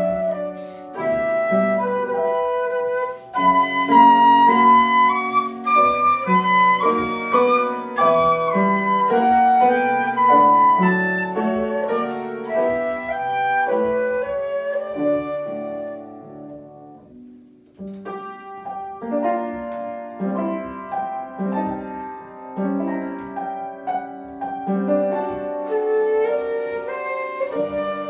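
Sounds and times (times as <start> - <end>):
flute playing slow melody: 0.0 - 16.7, 25.1 - 28.0
piano accompaniment: 0.0 - 28.0.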